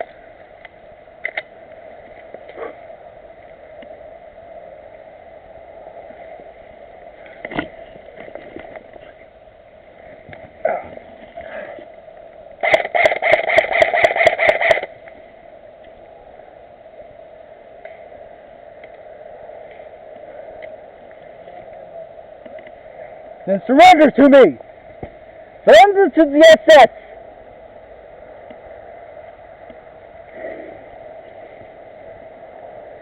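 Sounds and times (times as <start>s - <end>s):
airsoft gun shots: 12.6s - 14.9s.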